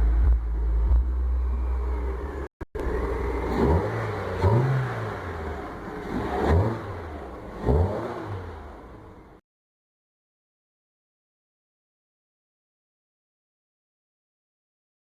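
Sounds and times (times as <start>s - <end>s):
car engine revving: 0.0s - 9.4s.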